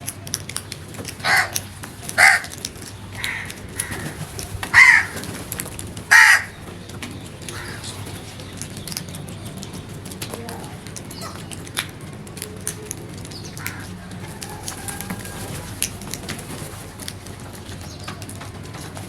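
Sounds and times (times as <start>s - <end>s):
crow cawing: 1.2s - 1.6s, 2.2s - 5.3s, 6.1s - 6.6s, 7.5s - 7.9s, 13.6s - 14.0s.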